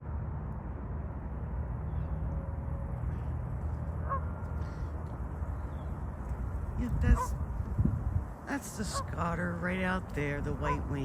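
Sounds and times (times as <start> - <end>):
wind rumble on microphone: 0.0 - 11.0
waterfowl call: 4.0 - 4.8.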